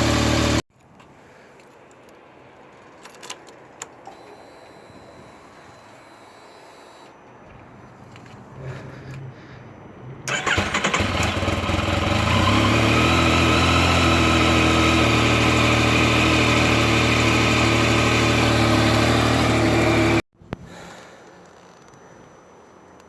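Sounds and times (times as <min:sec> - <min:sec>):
motorcycle engine idling: 0:00.0 - 0:00.6, 0:10.3 - 0:20.2
motorcycle engine cranking: 0:10.3 - 0:20.2.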